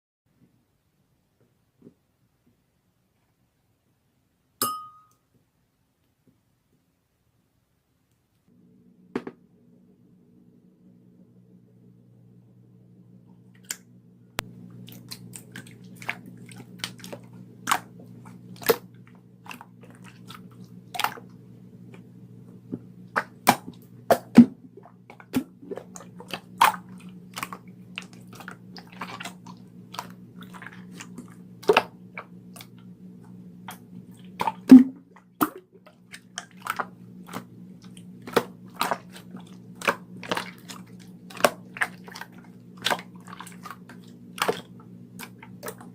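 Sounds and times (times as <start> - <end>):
low hum: 8.5 - 45.9.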